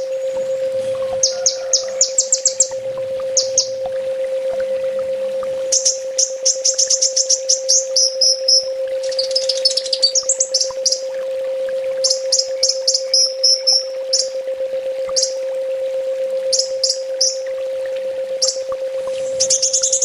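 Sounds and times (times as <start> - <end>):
bird chirping trills: 0.0 - 4.0, 5.7 - 11.1, 12.0 - 14.4, 16.5 - 17.4, 18.4 - 20.0
steady low hum: 0.0 - 20.0.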